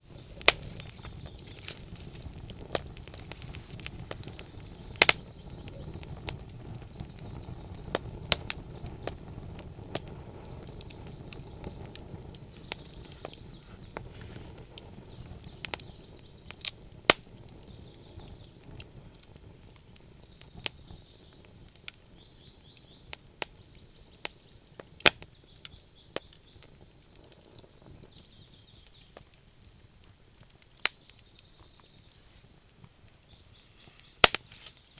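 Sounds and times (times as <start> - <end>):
campfire crackling: 0.0 - 34.9
loud wood snaps: 0.4 - 5.8, 16.5 - 17.5, 25.0 - 26.4, 30.0 - 32.0, 34.0 - 34.9
faint bird chirps: 4.0 - 16.6, 19.6 - 26.8, 27.6 - 29.2, 30.2 - 34.9.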